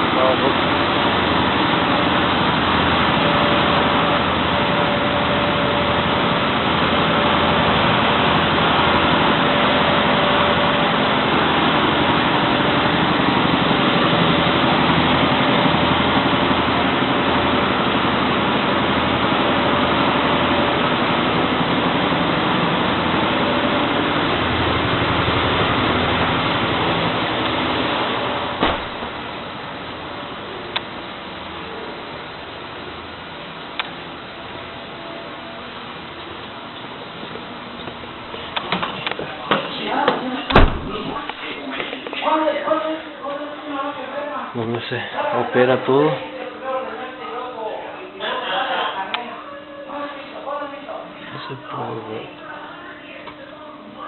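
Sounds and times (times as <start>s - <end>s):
machinery running noise: 0.0s - 42.8s.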